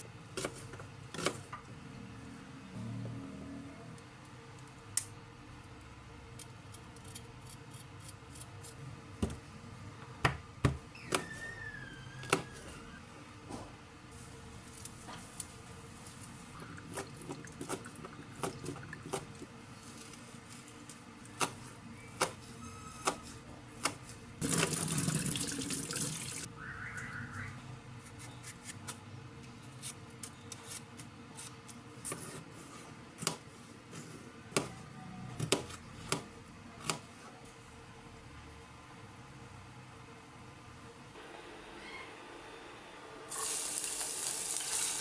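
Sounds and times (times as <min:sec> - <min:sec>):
kitchen tap running: 0:16.6 - 0:19.5, 0:24.4 - 0:26.5, 0:43.3 - 0:45.0.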